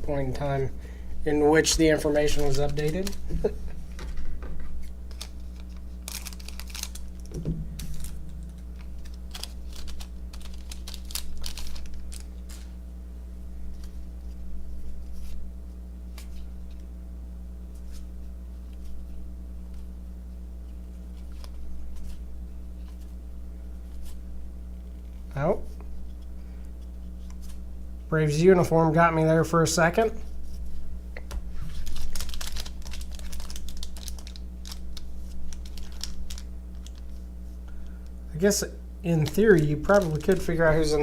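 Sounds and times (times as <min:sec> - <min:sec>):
steady low hum: 0:00.0 - 0:41.0
cards clicking and rustling: 0:01.6 - 0:04.2, 0:04.8 - 0:12.8, 0:31.3 - 0:37.2, 0:39.2 - 0:41.0.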